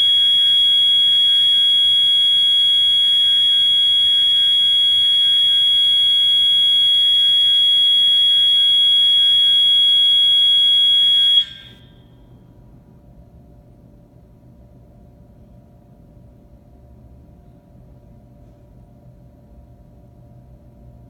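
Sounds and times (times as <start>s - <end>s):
fire alarm horn tone: 0.0s - 12.1s
other fire alarm horns: 0.0s - 12.1s.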